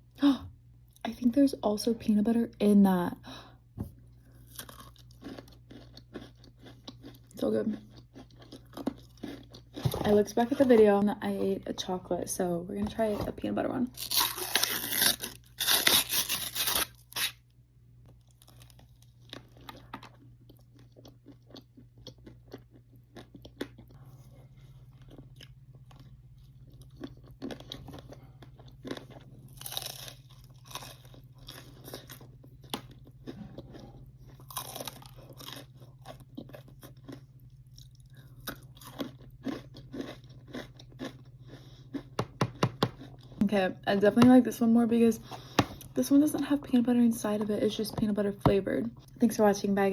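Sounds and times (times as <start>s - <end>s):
faint low hum: 0.0s - 49.9s
chewing and crunching ice cream cone: 4.1s - 10.0s, 13.9s - 17.4s, 18.0s - 43.4s.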